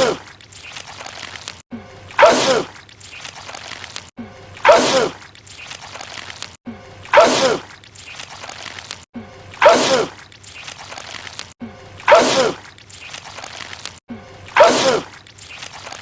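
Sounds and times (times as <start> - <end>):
man sneezing loudly: 12.1 - 12.6, 14.6 - 15.1.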